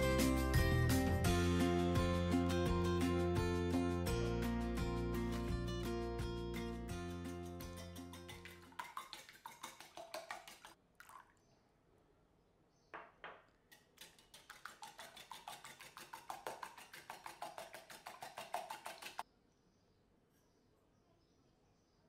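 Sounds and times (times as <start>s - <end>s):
utensil beating in mixing bowl: 7.6s - 11.2s, 13.7s - 19.2s.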